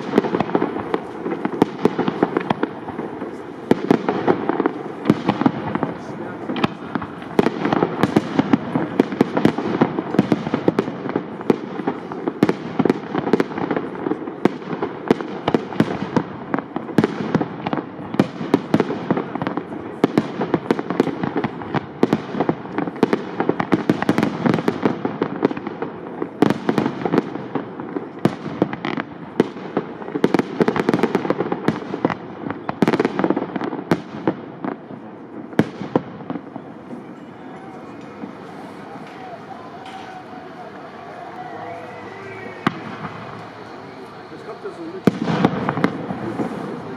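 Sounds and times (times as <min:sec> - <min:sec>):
firework shells bursting: 0:35.6 - 0:46.9.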